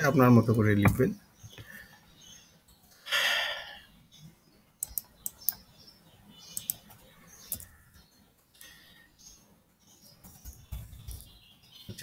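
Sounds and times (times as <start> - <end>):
mouse and key clicks: 4.8 - 5.7, 6.5 - 7.8.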